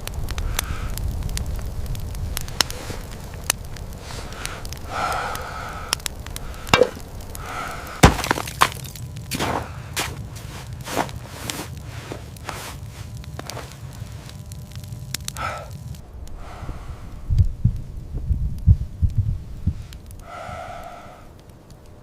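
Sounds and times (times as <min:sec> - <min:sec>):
low rumble: 0:00.0 - 0:22.0
sharp knocks and cracks: 0:05.9 - 0:12.6.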